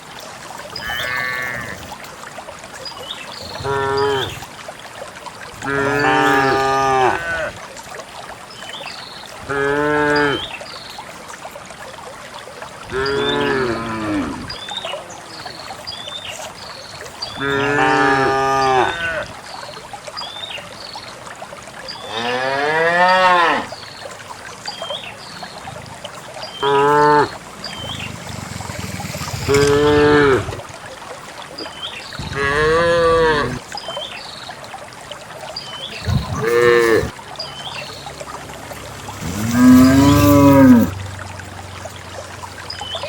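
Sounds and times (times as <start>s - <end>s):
cows mooing: 0.8s - 1.8s, 3.6s - 4.4s, 5.6s - 7.5s, 12.9s - 14.5s, 17.4s - 19.3s, 26.6s - 30.6s, 32.3s - 33.6s, 36.4s - 37.1s, 39.1s - 41.0s.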